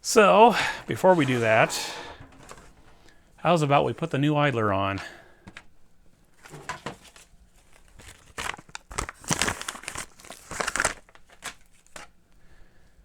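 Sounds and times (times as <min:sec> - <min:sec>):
plastic packaging crinkling: 0:07.6 - 0:12.0.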